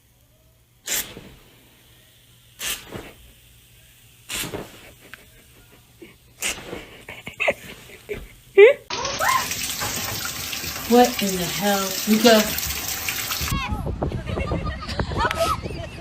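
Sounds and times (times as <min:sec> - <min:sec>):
pet sneezing: 0:04.3 - 0:05.0, 0:06.4 - 0:07.0.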